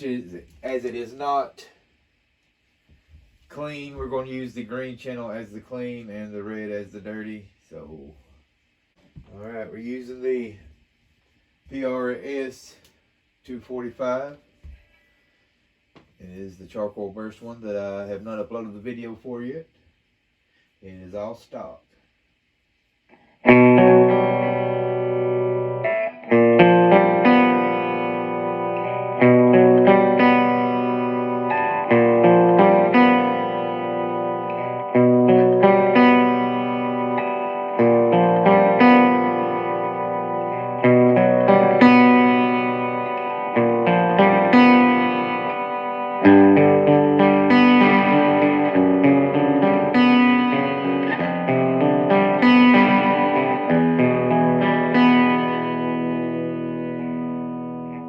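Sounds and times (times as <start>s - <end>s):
electric guitar chords with delay: 23.2s - 58.0s.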